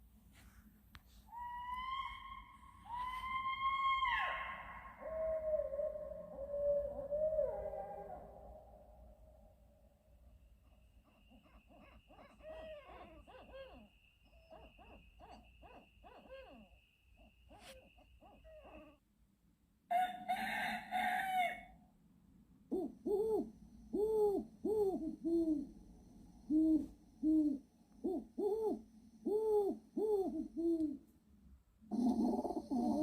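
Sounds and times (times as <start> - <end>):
drawn-out crowing call: 19.9 - 21.8.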